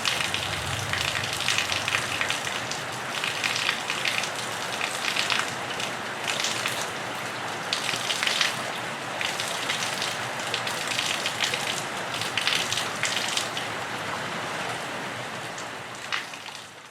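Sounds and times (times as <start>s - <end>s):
rain falling on a roof: 0.0s - 16.9s
water splatters and drips: 0.2s - 13.7s.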